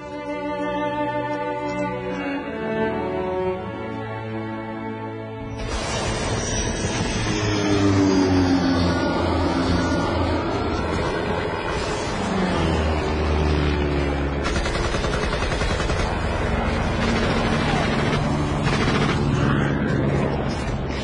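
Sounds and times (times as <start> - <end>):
rapid gunfire: 14.4 - 19.6.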